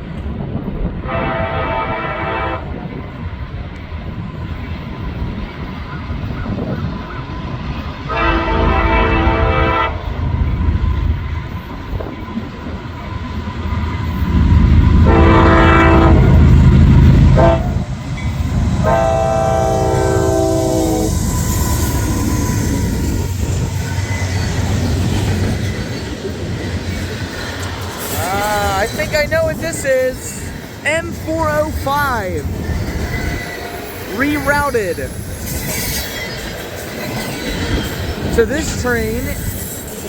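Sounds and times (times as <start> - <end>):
locomotive rumble: 0.0 - 40.0
train air horn blasts: 1.0 - 2.8, 8.1 - 10.1, 15.0 - 16.4, 17.4 - 17.8, 18.8 - 21.3
freight cars rolling: 11.3 - 40.0.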